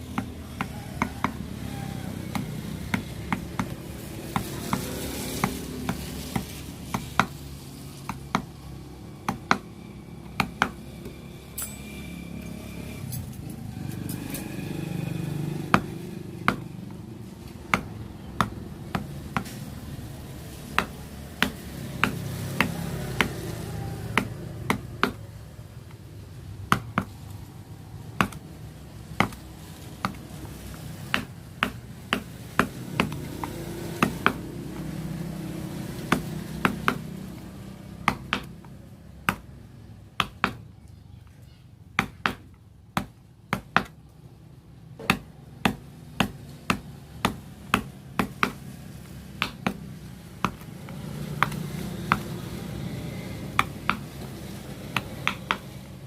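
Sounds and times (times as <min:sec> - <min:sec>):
mallet tapping chisel: 0:00.0 - 0:01.4, 0:02.3 - 0:07.4, 0:08.0 - 0:08.6, 0:09.2 - 0:10.8, 0:15.7 - 0:17.0, 0:17.7 - 0:19.6, 0:20.7 - 0:23.4, 0:24.1 - 0:25.2, 0:28.2 - 0:28.4, 0:29.2 - 0:29.4, 0:30.0 - 0:34.4, 0:36.0 - 0:37.0, 0:38.0 - 0:39.5, 0:40.2 - 0:40.6, 0:42.0 - 0:44.0, 0:45.0 - 0:48.7, 0:49.4 - 0:49.8, 0:50.4 - 0:52.4, 0:53.4 - 0:55.8.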